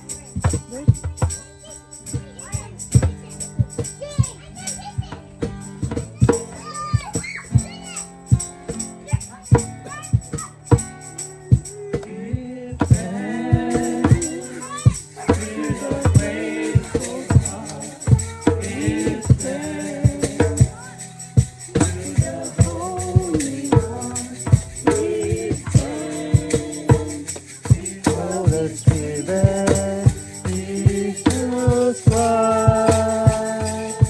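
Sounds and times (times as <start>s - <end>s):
hand percussion beat: 0.0s - 34.0s
worship song singing: 11.2s - 34.0s.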